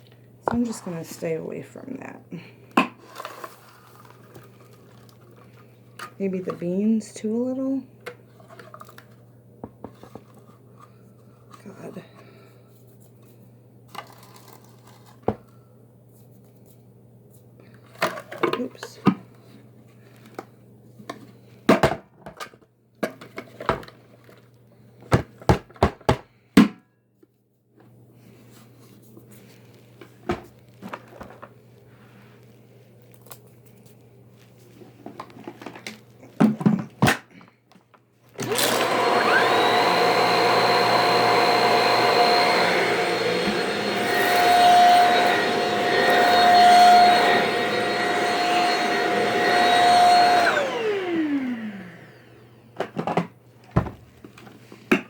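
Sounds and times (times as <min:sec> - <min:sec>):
vacuum cleaner running with whine: 0:38.4 - 0:53.1.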